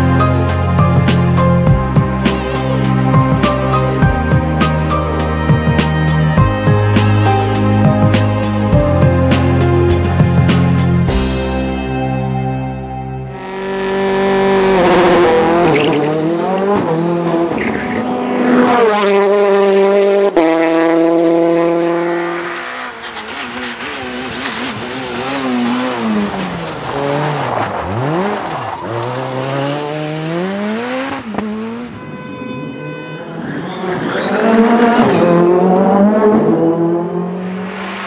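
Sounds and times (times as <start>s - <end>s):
rally car engine revving: 13.3s - 38.0s.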